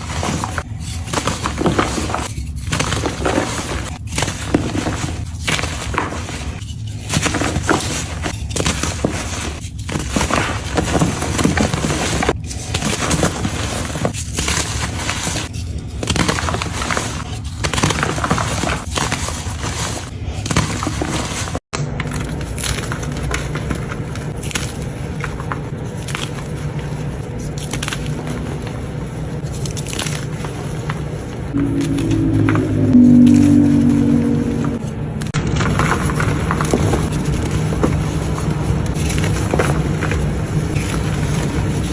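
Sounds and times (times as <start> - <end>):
dense crunching and crackling: 0.0 - 31.2
steady low hum: 31.2 - 35.4.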